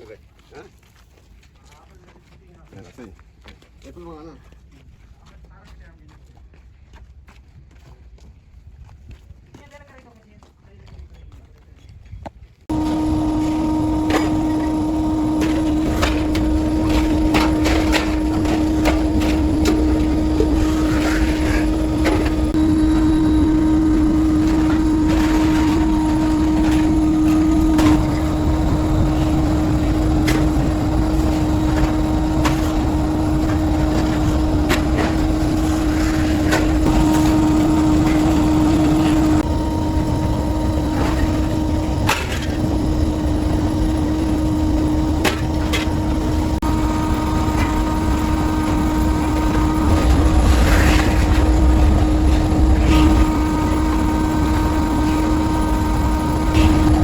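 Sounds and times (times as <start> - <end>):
workshop machinery humming: 12.7 - 57.0.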